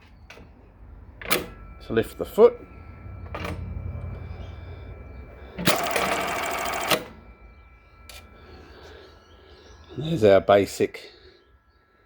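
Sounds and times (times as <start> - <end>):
sewing machine stitching: 5.7 - 7.0.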